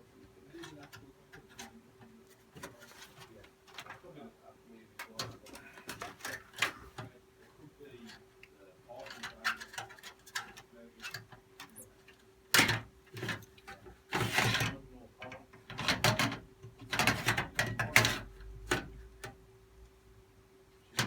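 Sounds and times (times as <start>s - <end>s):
faint steady hum: 0.0s - 21.0s
scraping rustles: 0.5s - 4.2s.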